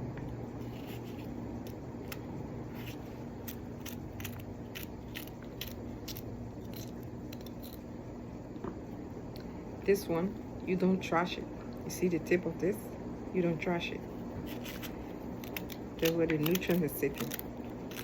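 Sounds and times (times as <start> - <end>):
steady low hum: 0.0 - 18.0
knife cutting crisp vegetable: 14.4 - 18.0.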